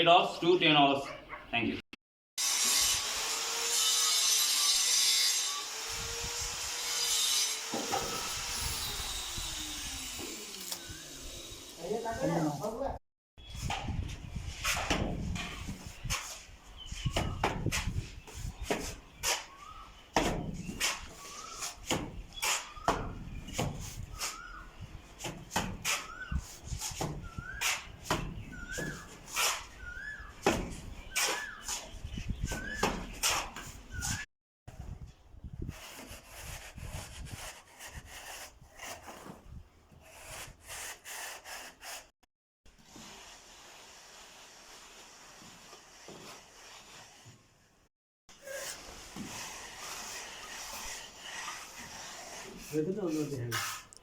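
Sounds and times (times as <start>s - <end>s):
hand tool scraping rough surface: 4.8s - 10.8s, 48.3s - 54.0s.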